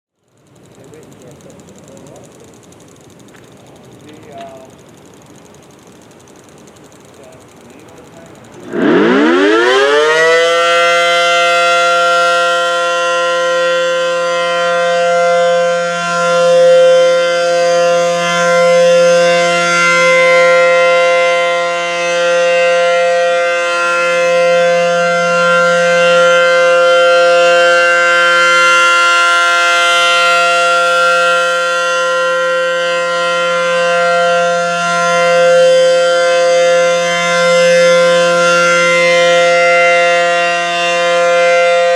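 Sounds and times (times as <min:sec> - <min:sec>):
warning siren winding up: 0:00.2 - 0:41.9.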